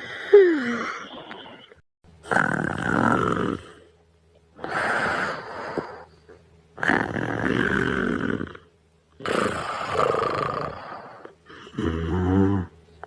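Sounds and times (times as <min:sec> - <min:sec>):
rasping snore-like breaths: 0:02.2 - 0:03.9, 0:06.8 - 0:12.7.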